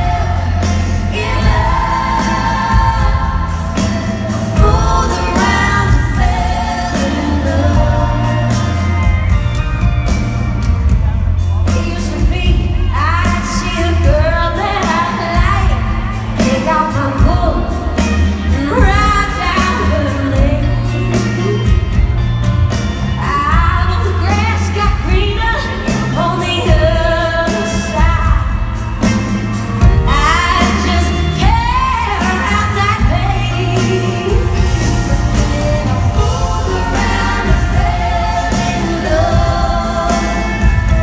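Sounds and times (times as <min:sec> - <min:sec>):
person singing lead vocals: 0:00.0 - 0:09.2, 0:29.6 - 0:41.0
live country rock band: 0:00.0 - 0:41.0.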